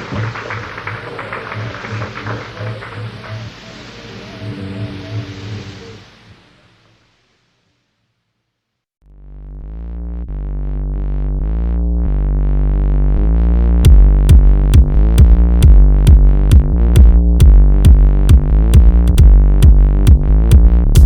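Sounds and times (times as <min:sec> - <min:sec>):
drum machine beat: 0:00.0 - 0:03.7, 0:13.8 - 0:21.0
synthesizer chord: 0:09.0 - 0:16.6.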